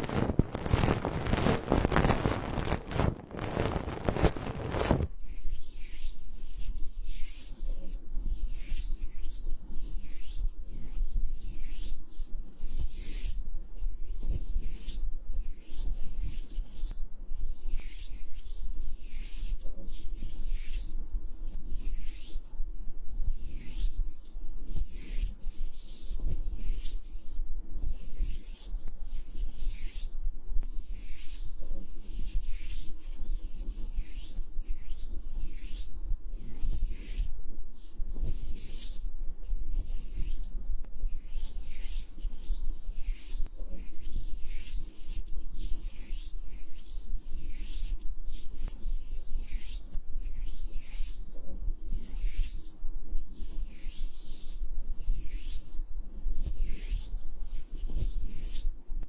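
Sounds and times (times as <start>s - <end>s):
rubbing strokes on microphone: 0.0s - 5.1s, 23.1s - 59.0s.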